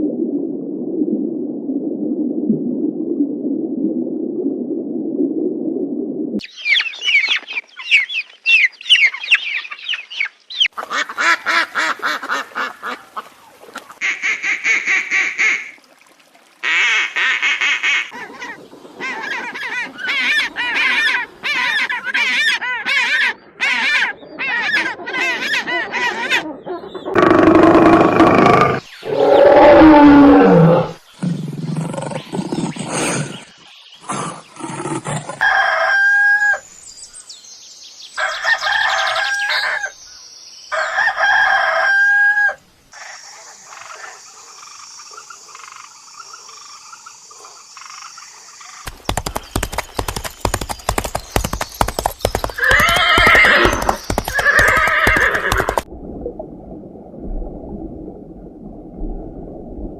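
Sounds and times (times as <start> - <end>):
animal calls: 17.8 - 35.4, 48.9 - 55.8.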